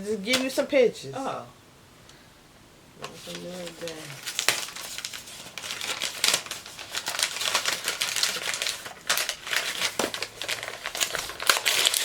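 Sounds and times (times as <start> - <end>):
wrapping paper crinkling: 3.0 - 12.0.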